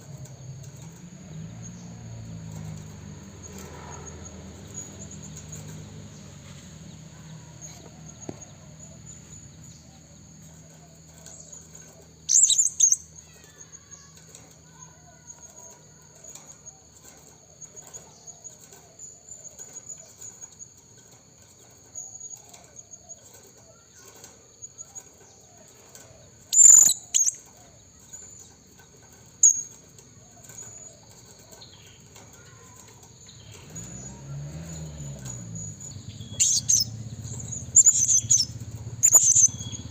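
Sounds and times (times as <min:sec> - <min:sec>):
parrot sharp high-pitched calls: 0:26.5 - 0:27.4, 0:36.4 - 0:36.9, 0:37.7 - 0:39.8
thin high-pitched trill: 0:37.7 - 0:39.8.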